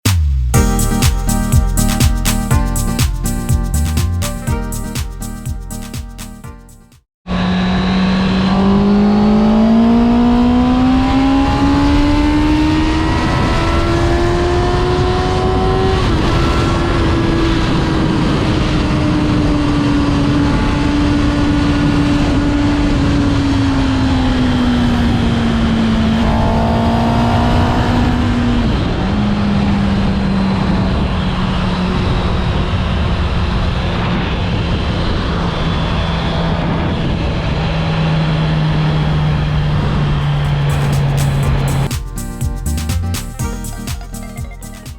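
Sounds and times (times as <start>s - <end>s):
motorcycle engine revving: 7.3s - 18.3s, 18.9s - 29.8s, 38.4s - 41.9s
heavy low rushing noise: 38.6s - 44.8s.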